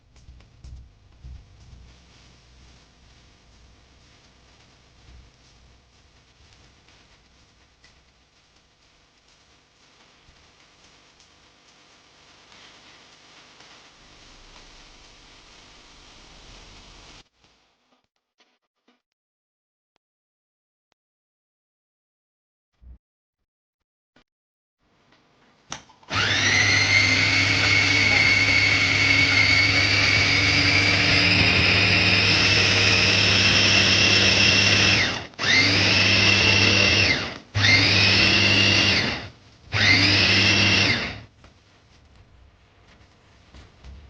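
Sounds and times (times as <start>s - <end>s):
food chopper motor whine: 26.1s - 41.3s.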